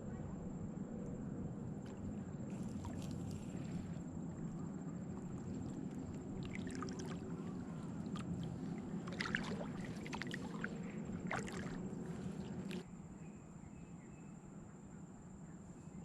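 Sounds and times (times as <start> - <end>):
kayak paddle splashing: 1.9 - 12.8
low rush of water: 1.9 - 12.8.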